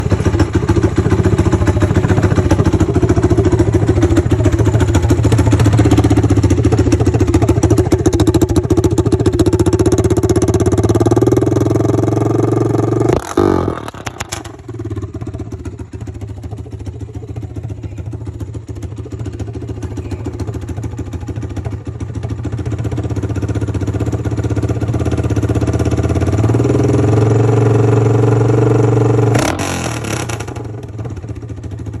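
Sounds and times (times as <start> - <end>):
exhaust crackling: 0.0 - 21.1
atv engine idling and revving: 0.0 - 32.0.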